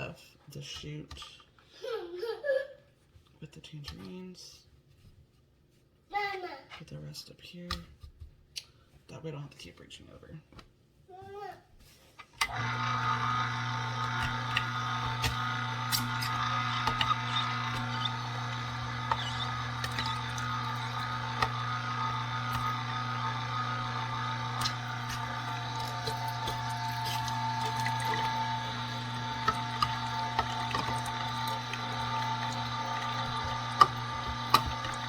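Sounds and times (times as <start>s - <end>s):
fruit cracking in juicer: 12.4s - 35.0s
juicer motor humming: 12.4s - 35.0s.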